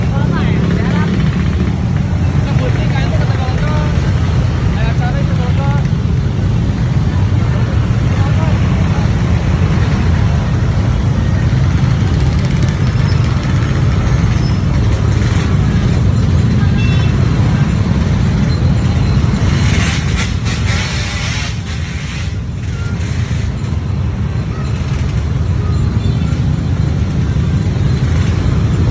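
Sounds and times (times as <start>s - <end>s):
bus engine rumbling: 0.0s - 28.9s.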